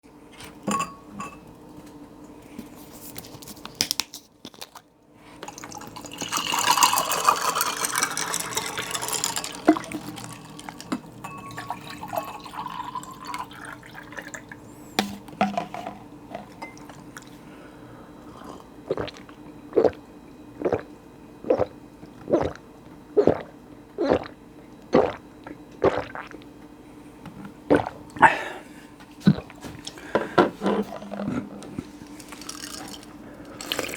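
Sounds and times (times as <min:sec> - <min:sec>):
liquid pouring into cup: 0:05.4 - 0:14.6, 0:32.2 - 0:33.9
person gulping: 0:18.3 - 0:26.5, 0:27.7 - 0:28.6, 0:29.3 - 0:31.8.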